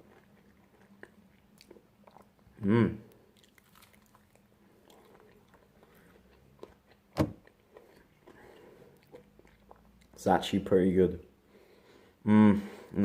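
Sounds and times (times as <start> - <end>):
person chewing: 0.0 - 10.2.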